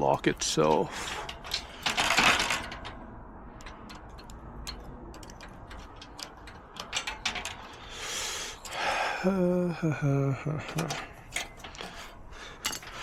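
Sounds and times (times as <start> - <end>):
tool scraping in lock: 0.6 - 8.9, 10.6 - 13.0.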